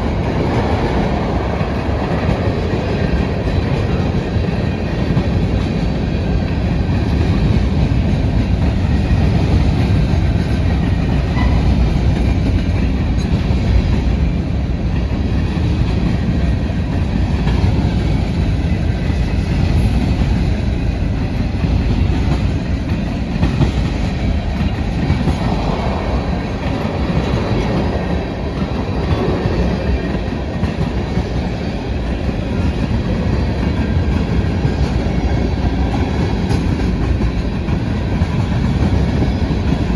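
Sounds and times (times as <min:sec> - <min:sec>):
freight train rumbling past: 0:00.0 - 0:39.9
wheels clacking over rail joints: 0:00.0 - 0:39.9.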